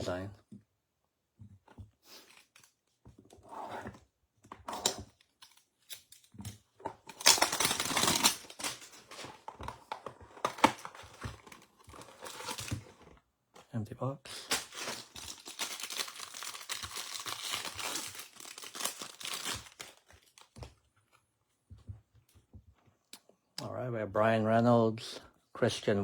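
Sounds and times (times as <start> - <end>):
packaging crinkling and rustling: 6.8 - 13.2, 14.4 - 20.9
packaging tearing: 7.1 - 9.4, 14.4 - 20.6.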